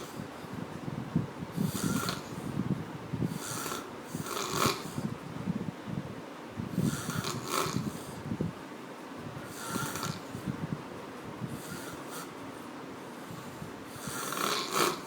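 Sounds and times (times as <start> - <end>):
person snoring heavily: 1.5 - 5.2, 6.7 - 8.3, 9.4 - 10.5, 11.5 - 12.4, 13.2 - 15.0.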